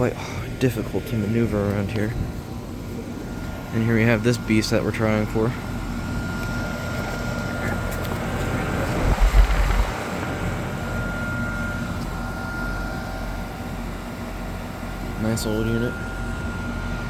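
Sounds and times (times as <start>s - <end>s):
heat pump humming: 0.0s - 17.0s
brief low rumble: 8.4s - 10.8s.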